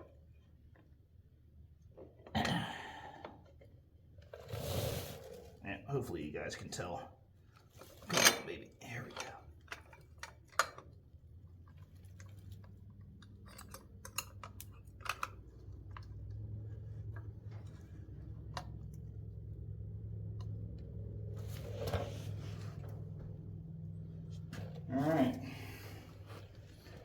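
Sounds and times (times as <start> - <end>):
steady low hum: 13.3 - 27.0.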